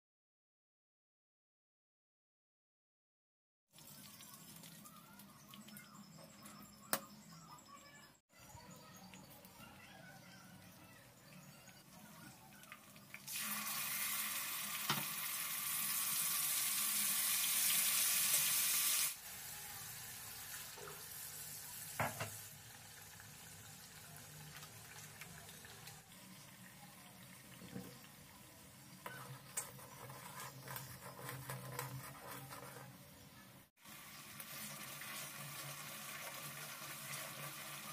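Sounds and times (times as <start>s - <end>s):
water pouring: 3.7s - 6.0s, 12.4s - 19.2s, 20.4s - 28.4s, 33.8s - 37.9s.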